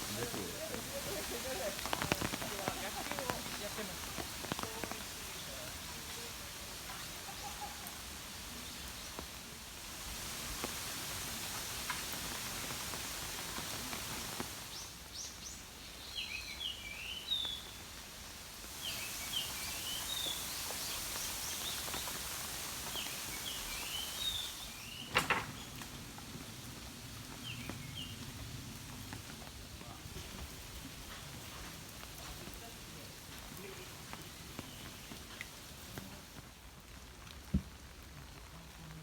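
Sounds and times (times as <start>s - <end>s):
light rain hissing: 0.0s - 39.0s.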